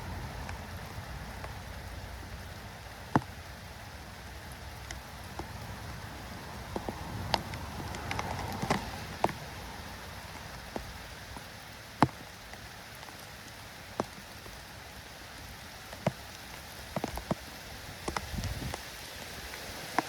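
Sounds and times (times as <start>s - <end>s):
drops ticking on hard surface: 0.0s - 18.8s
light rain patter: 0.0s - 20.0s.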